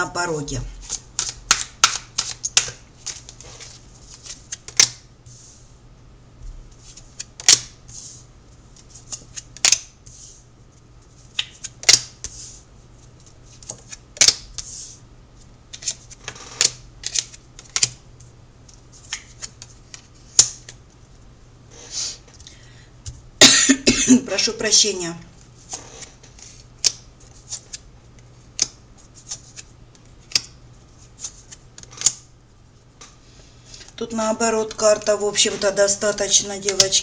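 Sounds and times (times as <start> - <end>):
cards rustling: 0.8 - 5.0, 18.7 - 20.8, 31.0 - 32.1
cards snapping and tapping: 0.9 - 3.3, 4.2 - 5.0, 7.2 - 7.8, 9.1 - 10.0, 11.3 - 12.3, 13.6 - 14.6, 15.7 - 18.0, 19.0 - 20.8, 26.8 - 27.8, 28.5 - 30.6, 31.2 - 32.2.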